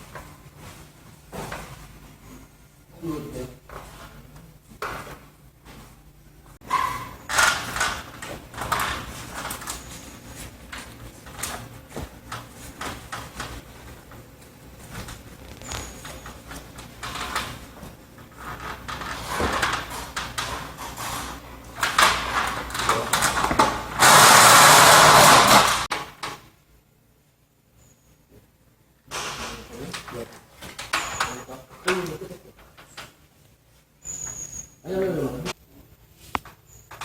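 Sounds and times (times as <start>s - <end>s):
tools and parts knocking and scraping: 6.6s - 13.6s, 15.6s - 24.4s, 29.1s - 33.1s.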